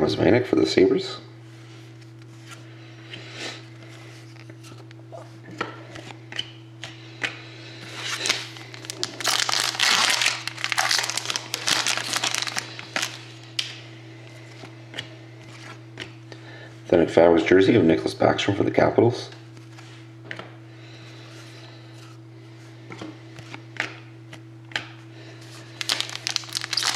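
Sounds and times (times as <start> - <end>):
steady low hum: 0.0 - 26.9
foil wrapper crinkling and tearing: 8.0 - 13.7, 25.7 - 26.9.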